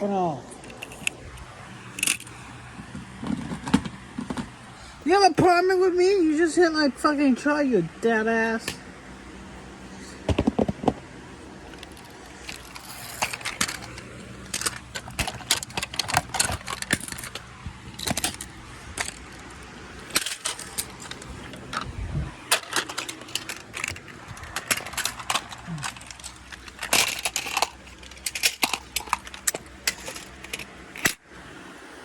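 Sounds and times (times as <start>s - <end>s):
steady low hum: 0.0s - 32.0s
sharp clicks and clatter: 0.6s - 4.6s, 11.7s - 31.2s.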